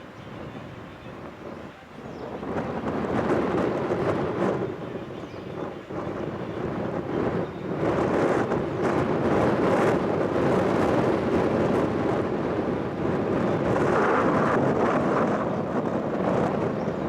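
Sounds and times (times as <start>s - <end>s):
strong wind buffeting microphone: 0.0s - 17.0s.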